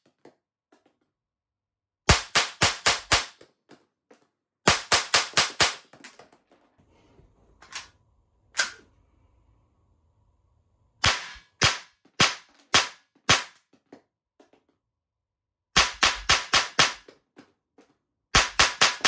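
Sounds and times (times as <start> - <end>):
toy gun shots popping: 11.0 - 13.6, 18.4 - 19.0.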